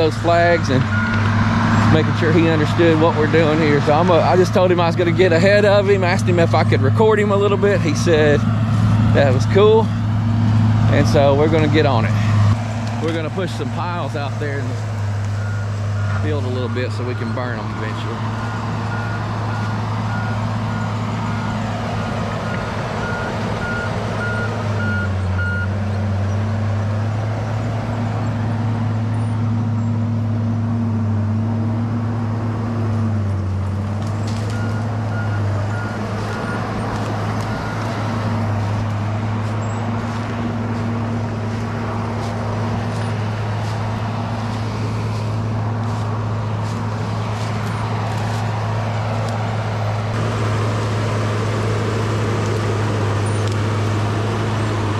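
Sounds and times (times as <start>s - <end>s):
bulldozer diesel engine running: 0.0s - 54.9s
back-up alarm beeping: 0.9s - 1.3s, 15.4s - 21.6s, 22.5s - 25.7s.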